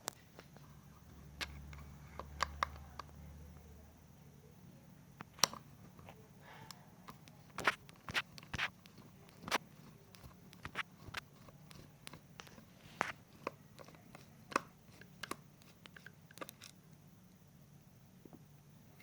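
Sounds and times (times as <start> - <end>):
faint steady hum: 0.0 - 19.0
tools and parts clicking: 7.1 - 16.8.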